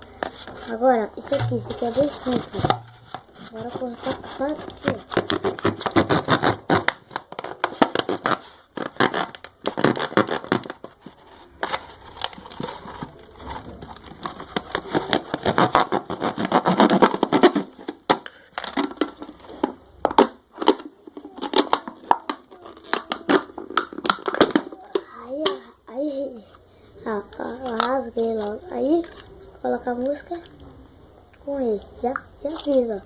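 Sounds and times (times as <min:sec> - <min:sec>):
material being cut and torn: 0:03.3 - 0:10.8, 0:14.6 - 0:17.7.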